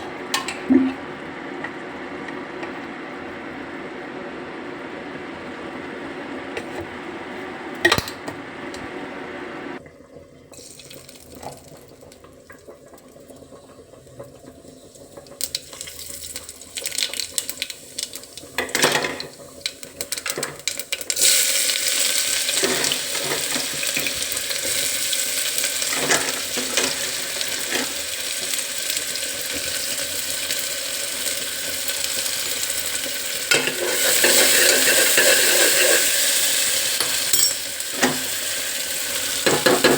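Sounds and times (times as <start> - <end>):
utensils clinking against pot: 22.5 - 24.2, 25.9 - 27.9, 33.5 - 36.2, 37.0 - 38.3, 39.4 - 39.9.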